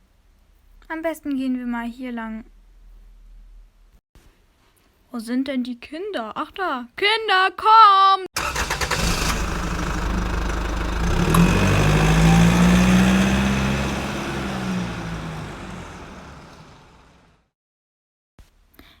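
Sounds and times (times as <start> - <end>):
vehicle engine driving off: 8.4 - 17.5.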